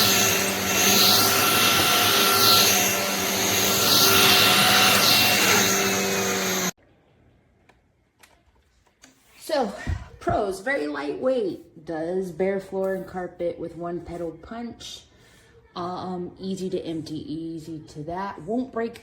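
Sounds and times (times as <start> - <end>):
stick vacuum motor whine: 0.0 - 6.8.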